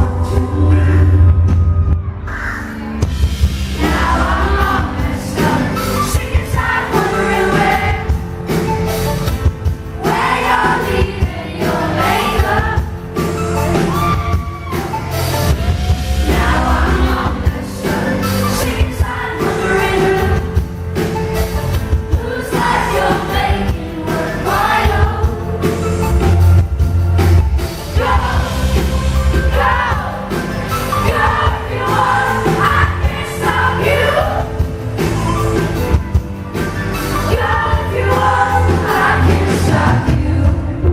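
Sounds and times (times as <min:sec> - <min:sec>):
bass guitar: 0:00.0 - 0:40.9
drums: 0:00.0 - 0:40.9
women singing: 0:03.7 - 0:08.2, 0:10.0 - 0:14.3, 0:16.1 - 0:20.6, 0:22.1 - 0:26.0, 0:27.9 - 0:34.6, 0:37.2 - 0:40.9.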